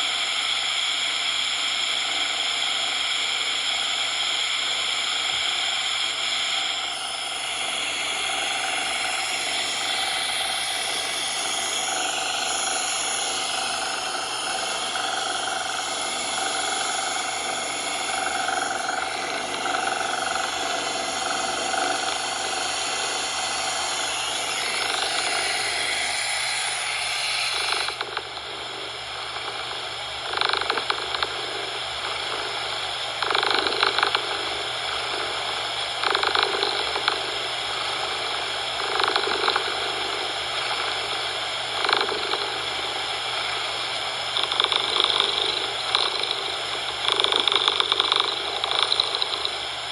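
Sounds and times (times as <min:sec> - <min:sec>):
synthetic noise hiss: 0:07.4 - 0:28.0
cat purring: 0:08.4 - 0:23.2.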